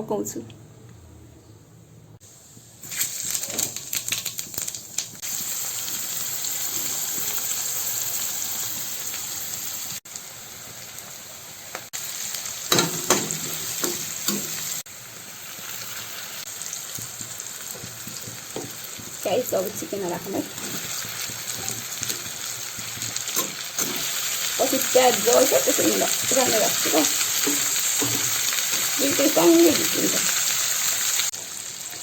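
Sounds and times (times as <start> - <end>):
food sizzling in hot oil: 2.2 - 32.0
spoon clattering in pan: 12.7 - 14.7, 23.3 - 24.2, 25.8 - 29.0.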